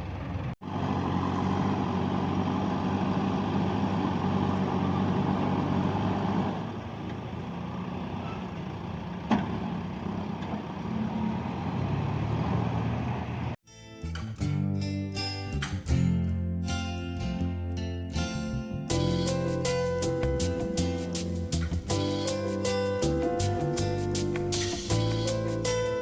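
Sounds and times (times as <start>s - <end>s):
diesel engine running: 0.0s - 13.6s, 18.9s - 26.0s.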